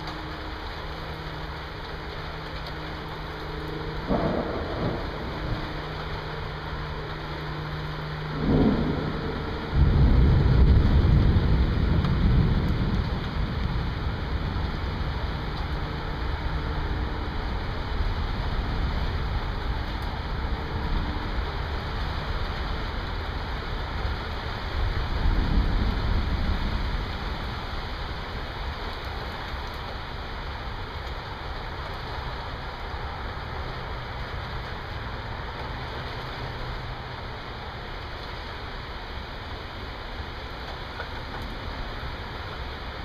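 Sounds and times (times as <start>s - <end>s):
steady rain: 0.0s - 43.0s
low rumble of thunder: 3.1s - 30.9s
thunder crack: 4.0s - 7.1s, 8.3s - 14.2s.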